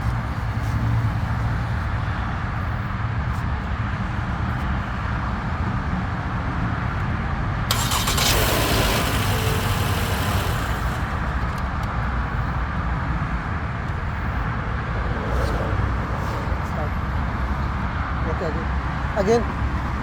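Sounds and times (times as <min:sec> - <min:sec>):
car engine rumbling: 0:07.4 - 0:13.4.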